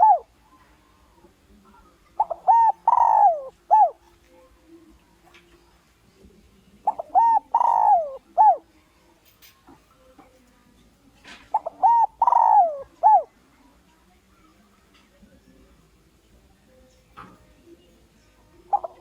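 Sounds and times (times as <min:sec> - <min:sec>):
dove cooing: 0:00.0 - 0:00.4, 0:02.2 - 0:04.2, 0:06.8 - 0:08.7, 0:11.5 - 0:13.4, 0:18.7 - 0:19.0.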